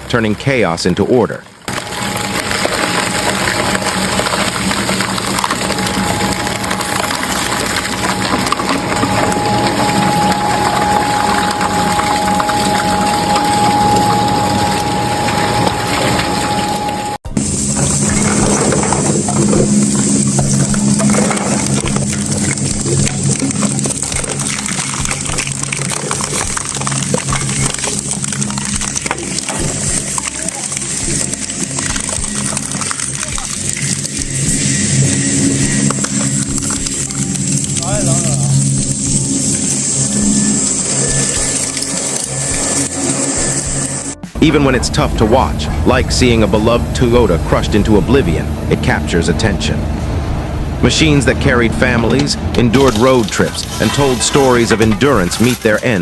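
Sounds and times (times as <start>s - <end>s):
thin steady whine: 1.6s - 56.0s
shredding machine motor humming: 1.7s - 55.4s
material crunching and cracking: 17.4s - 44.1s.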